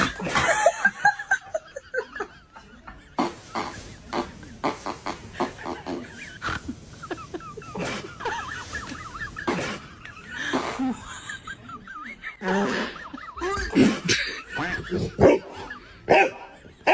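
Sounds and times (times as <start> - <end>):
people laughing and snickering: 0.0 - 16.9
steady hiss: 3.0 - 12.4.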